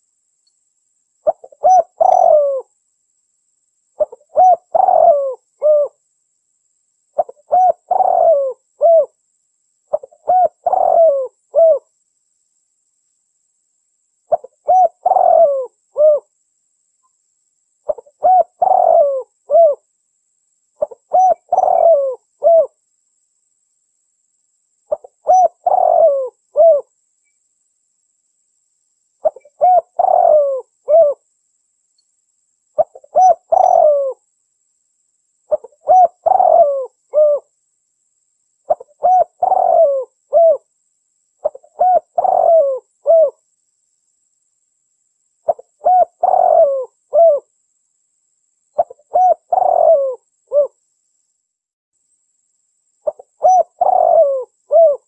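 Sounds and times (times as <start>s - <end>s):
dove cooing: 1.2s - 2.7s, 4.0s - 6.0s, 7.2s - 9.2s, 9.9s - 11.9s, 14.3s - 16.3s, 17.9s - 19.8s, 20.8s - 22.8s, 24.9s - 26.9s, 29.2s - 31.2s, 32.8s - 34.2s, 35.5s - 37.5s, 38.7s - 40.7s, 41.4s - 43.4s, 45.5s - 47.5s, 48.8s - 50.8s, 53.0s - 55.0s.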